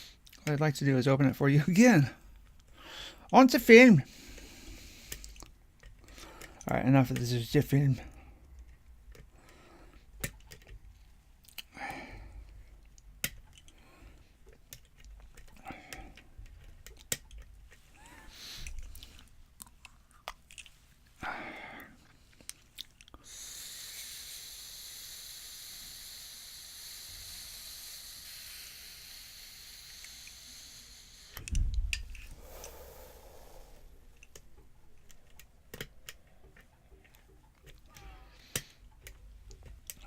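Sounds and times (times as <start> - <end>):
steady hiss: 0.0 - 2.2, 23.2 - 35.1.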